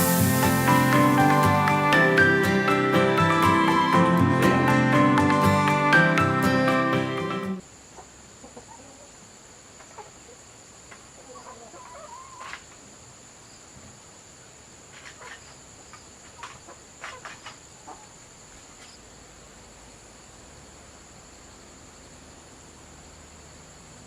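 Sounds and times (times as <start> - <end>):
high-pitched insect drone: 0.0 - 7.7
chickens clucking: 8.0 - 9.2, 9.8 - 12.8, 14.9 - 15.6, 16.2 - 18.1.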